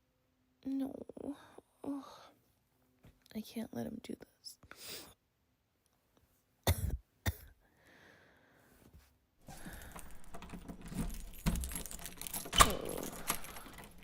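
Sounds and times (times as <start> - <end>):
keys jangling at a door lock: 9.5 - 14.0
lock click: 9.5 - 14.0.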